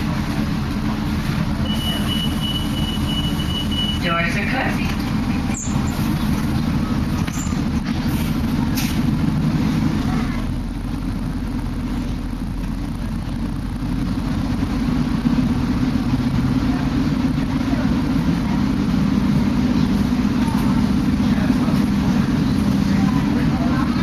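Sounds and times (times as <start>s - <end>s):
bus engine rumble: 0.0s - 24.0s.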